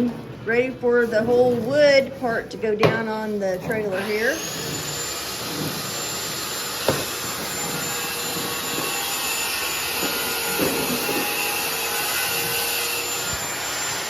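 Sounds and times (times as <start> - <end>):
power tool motor whining: 3.9 - 14.0
sharp knocks: 6.8 - 7.2.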